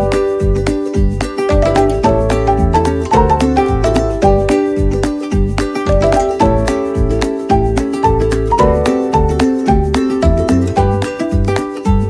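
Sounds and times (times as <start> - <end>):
upbeat background music: 0.0 - 12.0.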